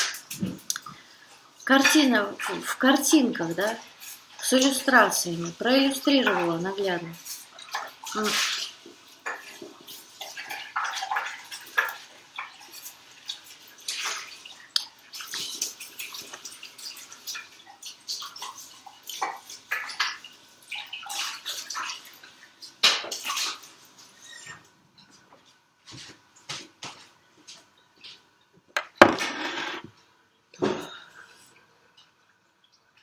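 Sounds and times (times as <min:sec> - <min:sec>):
dishes clattering: 0:28.8 - 0:29.9.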